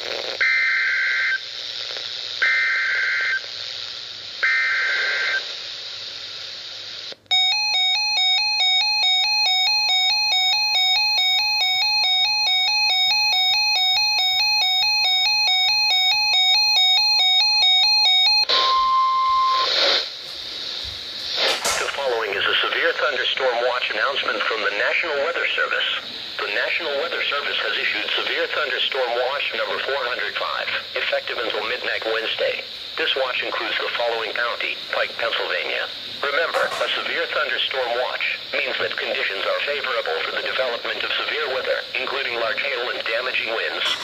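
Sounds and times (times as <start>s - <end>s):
radio hiss: 0.0s - 0.4s, 1.2s - 7.3s, 19.4s - 44.0s
steady warning tone: 7.3s - 44.0s.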